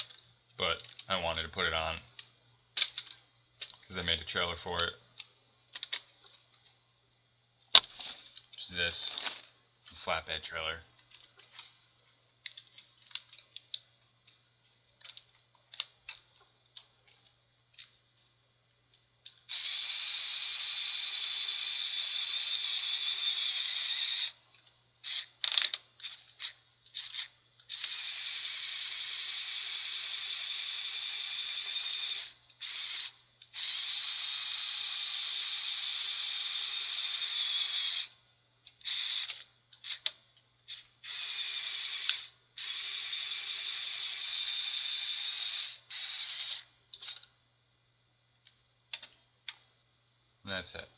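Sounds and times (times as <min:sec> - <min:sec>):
plastic parts clicking: 0:12.4 - 0:14.4, 0:15.0 - 0:18.0, 0:24.5 - 0:28.0
small electric motors whirring: 0:19.5 - 0:24.4, 0:25.0 - 0:38.2, 0:38.8 - 0:40.1, 0:40.7 - 0:47.2.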